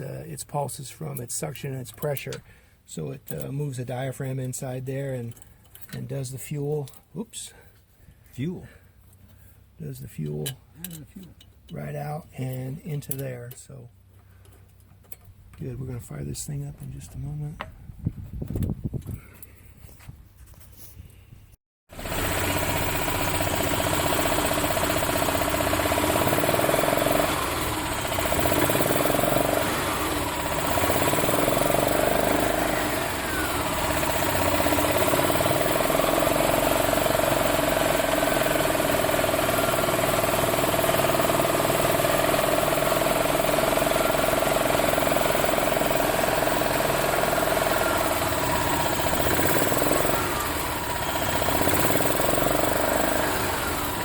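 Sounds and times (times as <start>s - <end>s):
single-cylinder engine running: 21.9s - 54.0s.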